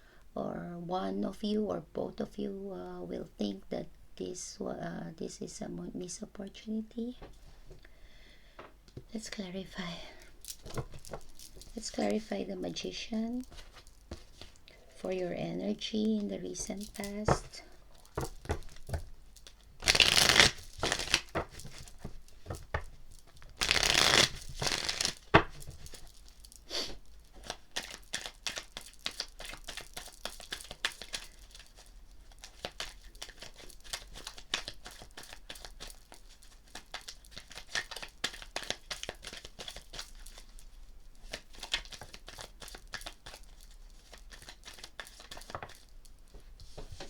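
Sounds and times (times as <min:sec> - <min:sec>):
cards shuffled by hand: 0:10.1 - 0:15.2, 0:16.0 - 0:47.0.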